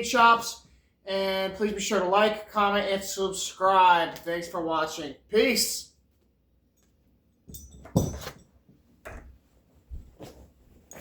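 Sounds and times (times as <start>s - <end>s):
handling knocks and scuffs: 7.5s - 11.0s.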